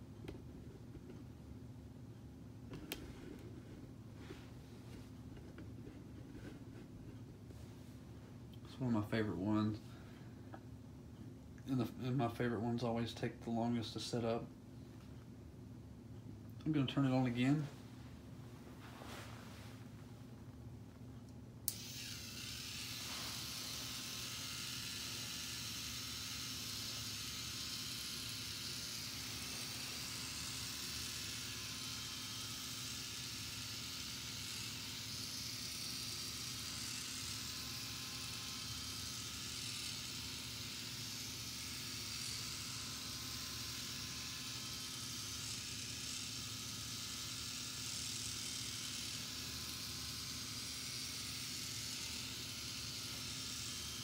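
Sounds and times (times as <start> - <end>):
small electric motor whirring: 21.7 - 54.0.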